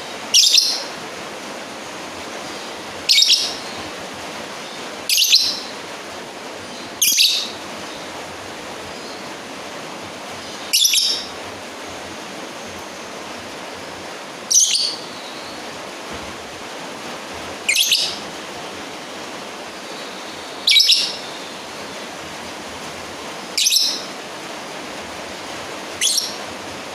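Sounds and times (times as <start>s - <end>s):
steady hiss: 0.0s - 26.9s
lovebird shrill calls: 0.3s - 0.9s, 3.0s - 3.8s, 5.1s - 5.7s, 7.0s - 7.6s, 10.6s - 11.3s, 14.5s - 15.6s, 17.7s - 18.2s, 19.9s - 21.4s, 23.6s - 24.1s, 26.0s - 26.4s.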